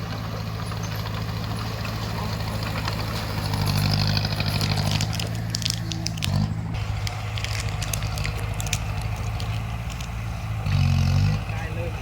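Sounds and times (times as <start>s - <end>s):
bulldozer diesel engine running: 0.0s - 12.0s
sharp cracks and clicks: 4.6s - 10.2s.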